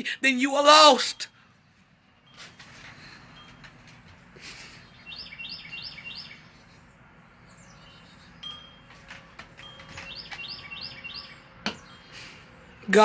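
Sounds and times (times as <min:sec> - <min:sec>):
bird calling: 0:04.4 - 0:06.9, 0:09.6 - 0:12.8.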